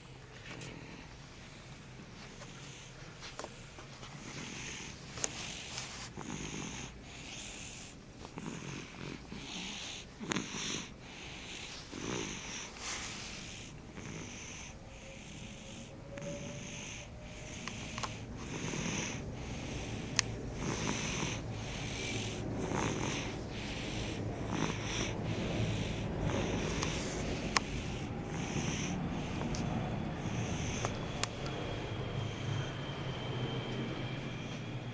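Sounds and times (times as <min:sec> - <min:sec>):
baby snoring: 0:04.2 - 0:31.0.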